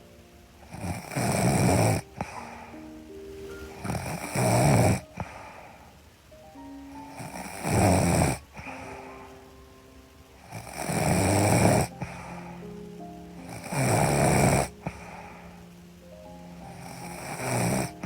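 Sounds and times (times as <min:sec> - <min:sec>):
soft sustained music notes: 0:00.0 - 0:18.0
woman snoring: 0:00.7 - 0:02.8, 0:03.8 - 0:05.8, 0:07.0 - 0:09.0, 0:10.4 - 0:12.6, 0:13.4 - 0:15.6, 0:16.7 - 0:18.0.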